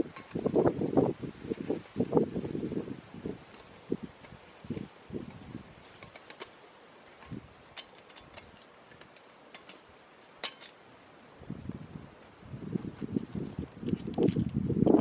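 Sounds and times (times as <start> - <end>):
faint outdoor background: 0.0 - 15.0.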